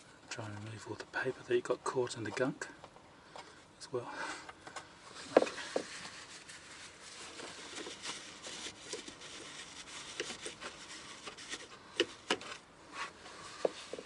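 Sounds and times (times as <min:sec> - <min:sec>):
hands rubbing and scuffing parts: 0:05.2 - 0:14.0.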